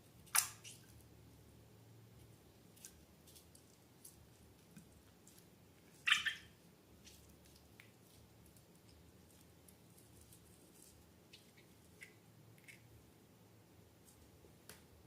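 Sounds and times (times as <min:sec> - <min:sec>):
wet squelch: 0:02.8 - 0:12.8.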